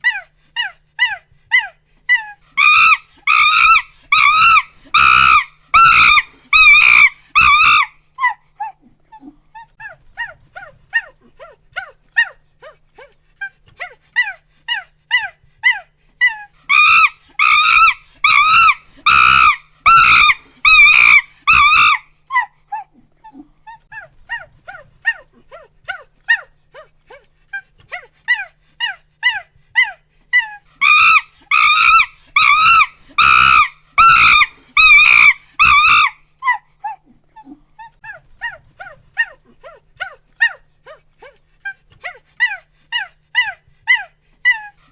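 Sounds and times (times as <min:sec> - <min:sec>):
monkey hooting: 0:00.0 - 0:08.8, 0:14.2 - 0:25.3, 0:27.9 - 0:41.0, 0:42.0 - 0:44.9
monkey screaming: 0:00.0 - 0:08.8, 0:14.2 - 0:22.9, 0:28.3 - 0:37.0, 0:42.0 - 0:44.9.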